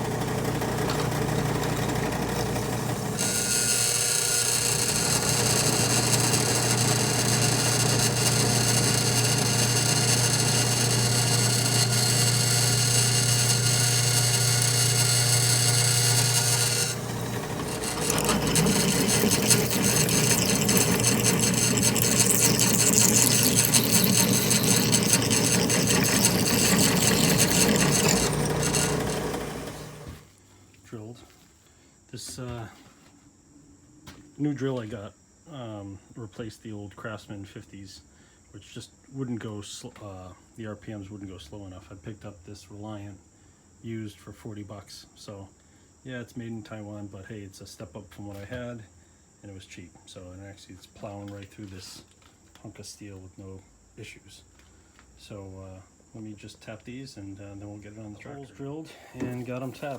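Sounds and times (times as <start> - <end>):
drill press cutting steel: 0.0 - 30.3, 59.2 - 59.9.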